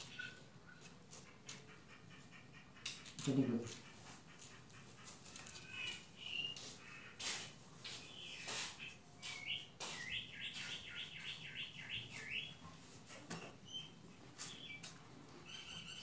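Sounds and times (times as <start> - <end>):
bird chirps: 0.0 - 0.9, 3.8 - 12.6, 13.6 - 16.0
songbird singing: 0.0 - 2.0, 2.6 - 12.6, 13.5 - 16.0.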